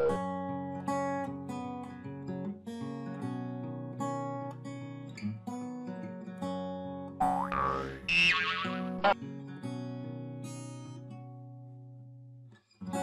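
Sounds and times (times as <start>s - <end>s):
acoustic guitar music: 0.0s - 13.0s
rising cartoon sound effect: 7.3s - 9.2s.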